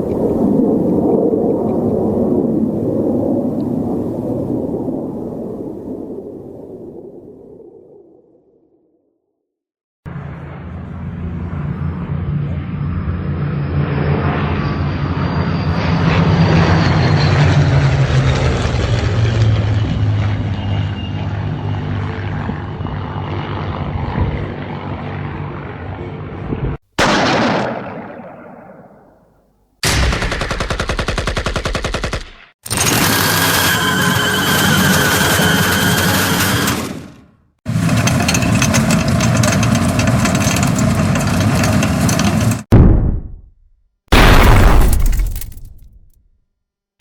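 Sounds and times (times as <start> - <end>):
explosion blast: 27.0 - 30.2, 42.7 - 46.4
machine-gun fire: 27.0 - 32.6, 42.7 - 46.1
rapid gunfire: 27.0 - 32.6.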